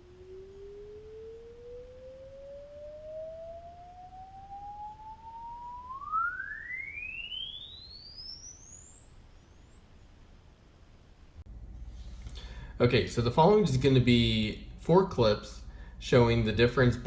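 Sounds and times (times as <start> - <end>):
rising sine-wave test tone: 0.0 - 11.4.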